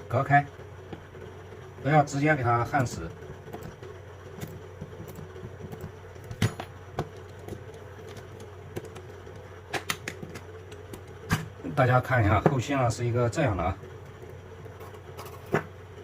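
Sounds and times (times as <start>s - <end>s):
low electrical hum: 0.0s - 16.0s
clicks and taps handling batteries: 4.4s - 11.5s.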